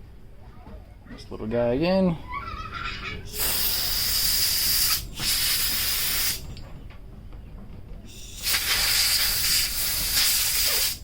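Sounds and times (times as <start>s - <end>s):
compressed air hiss: 3.3s - 6.5s, 8.1s - 11.0s.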